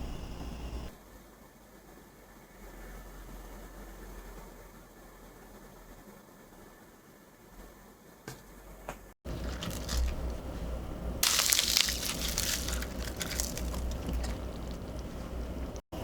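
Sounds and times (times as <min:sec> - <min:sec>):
dense crackling crunching noise: 0:09.2 - 0:10.6, 0:11.2 - 0:15.8.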